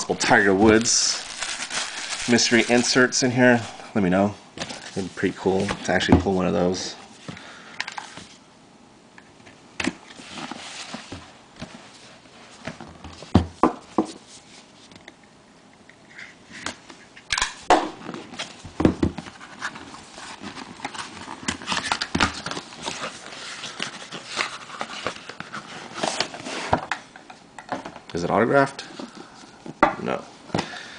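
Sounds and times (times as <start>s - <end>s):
crinkly wrapping rustling: 0.1s - 3.8s, 19.2s - 26.8s.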